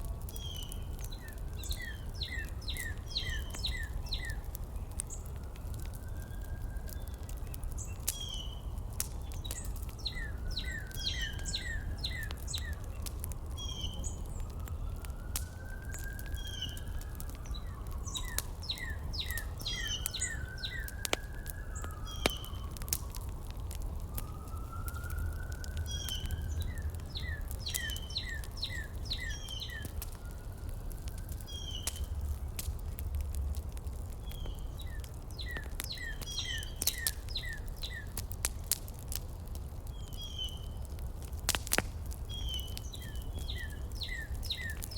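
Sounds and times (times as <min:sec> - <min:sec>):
crackling clicks: 0:00.0 - 0:44.9
birds chirping: 0:00.3 - 0:05.9, 0:06.8 - 0:23.0, 0:24.4 - 0:30.5, 0:31.2 - 0:32.3, 0:34.2 - 0:38.2, 0:42.2 - 0:44.9
slow whistling tone: 0:09.5 - 0:32.1.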